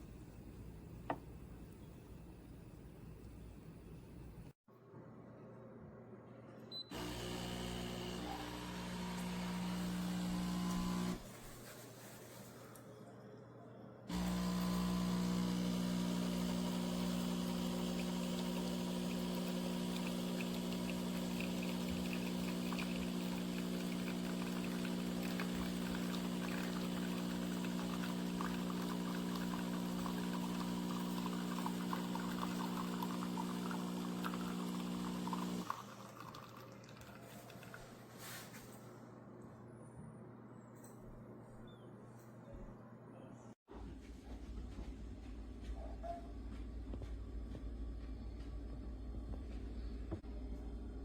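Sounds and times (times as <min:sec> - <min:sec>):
espresso machine pump humming: 0:06.9 - 0:11.2, 0:14.1 - 0:37.0
liquid pouring and dribbling: 0:16.3 - 0:38.0.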